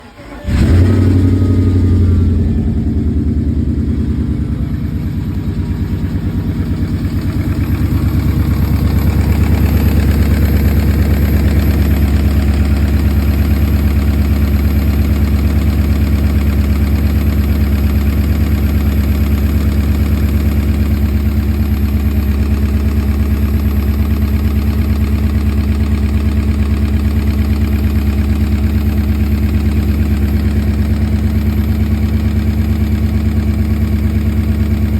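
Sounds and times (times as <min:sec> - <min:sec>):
car engine starting and idling: 0:00.0 - 0:34.9
engine knocking: 0:00.0 - 0:34.9.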